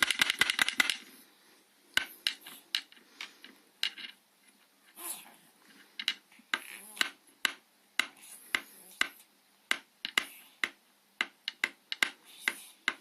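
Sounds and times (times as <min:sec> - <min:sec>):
wooden toy knocking: 0:00.0 - 0:01.0, 0:06.0 - 0:13.0.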